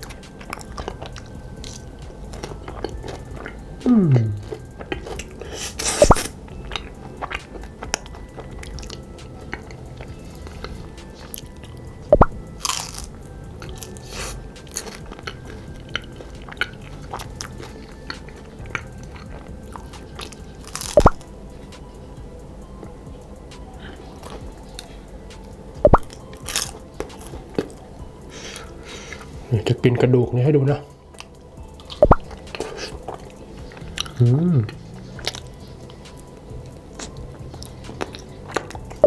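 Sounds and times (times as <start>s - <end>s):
wet chewing clicks: 0.0s - 21.3s, 31.1s - 39.0s
crunching candy bites: 12.2s - 17.5s, 19.7s - 21.2s.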